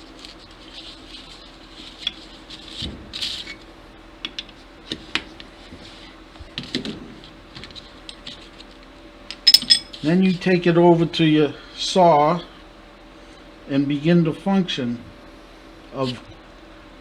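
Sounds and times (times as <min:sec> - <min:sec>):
low steady hum: 0:00.0 - 0:17.0
metallic clicks of tool handling: 0:09.3 - 0:09.9.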